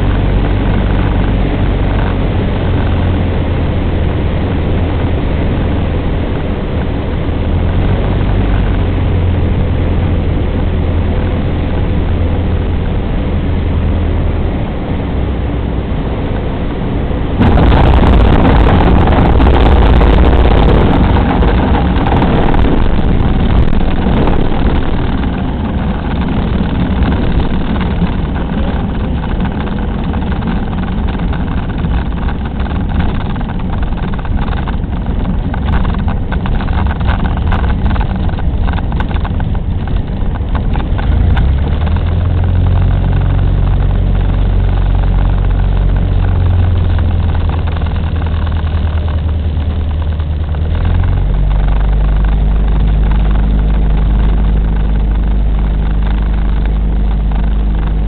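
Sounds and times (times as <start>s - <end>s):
light aircraft engine running: 0.0s - 58.0s
rattles and knocks: 17.4s - 58.0s.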